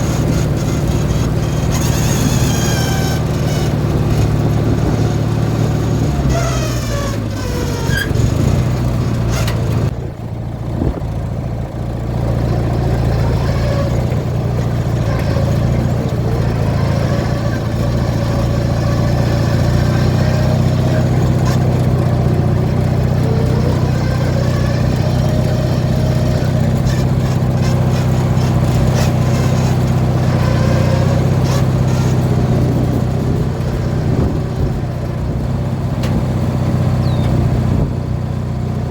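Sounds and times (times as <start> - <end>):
riding mower engine running: 0.0 - 38.9.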